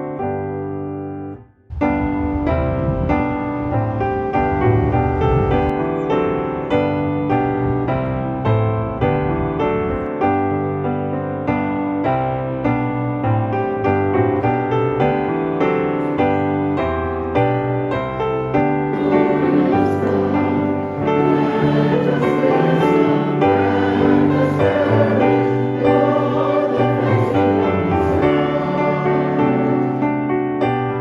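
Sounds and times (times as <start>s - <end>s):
piano playing: 0.0s - 31.0s
choir singing: 18.9s - 30.1s.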